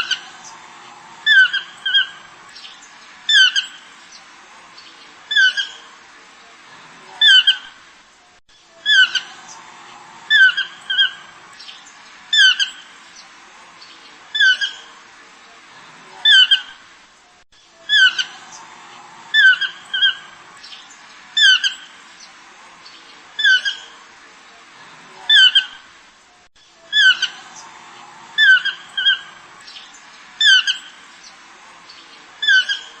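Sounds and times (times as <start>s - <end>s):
high squawking animal calls: 0.0s - 0.5s, 1.2s - 2.3s, 3.3s - 3.8s, 5.3s - 5.8s, 7.2s - 7.7s, 8.8s - 9.6s, 10.3s - 11.4s, 12.3s - 12.9s, 14.4s - 14.9s, 16.2s - 16.8s, 17.8s - 18.7s, 19.3s - 20.4s, 21.4s - 22.0s, 23.4s - 24.0s, 25.3s - 25.8s, 26.9s - 27.7s, 28.4s - 29.8s, 30.4s - 31.0s, 32.4s - 33.0s.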